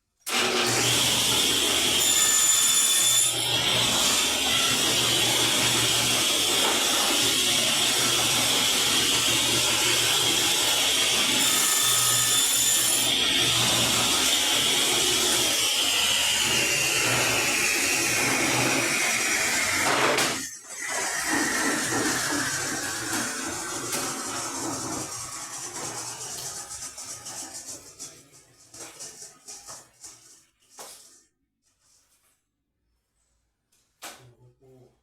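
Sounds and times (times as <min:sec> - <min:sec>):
electric saw cutting: 0:00.3 - 0:27.8.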